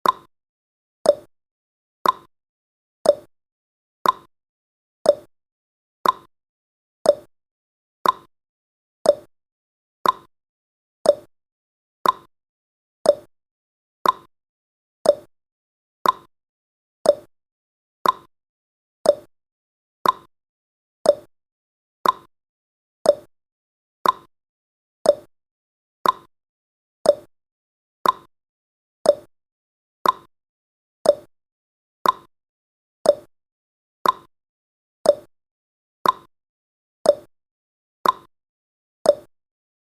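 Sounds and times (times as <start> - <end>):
clock ticking: 2.0 - 2.3, 4.0 - 4.3, 6.0 - 6.3, 8.0 - 8.3, 10.0 - 10.3, 12.0 - 12.3, 14.0 - 14.3, 15.1 - 15.3, 16.0 - 16.3, 17.1 - 17.3, 18.0 - 18.3, 19.1 - 19.3, 20.0 - 20.3, 21.1 - 21.3, 22.0 - 22.3, 24.0 - 24.3, 26.0 - 26.3, 28.0 - 28.3, 29.1 - 29.3, 30.0 - 30.3, 31.1 - 31.3, 32.0 - 32.3, 33.1 - 33.3, 34.0 - 34.3, 35.1 - 35.3, 36.0 - 36.3, 38.0 - 38.3, 39.1 - 39.3.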